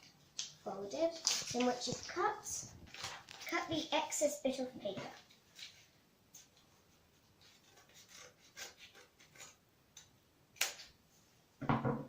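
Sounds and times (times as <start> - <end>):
paper rustling: 0.4 - 3.8.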